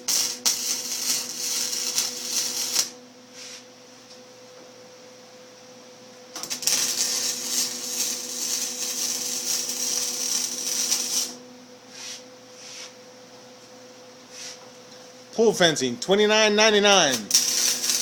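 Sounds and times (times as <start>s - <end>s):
electric welding arc crackling: 0.0s - 3.0s, 6.4s - 11.4s, 15.6s - 18.0s.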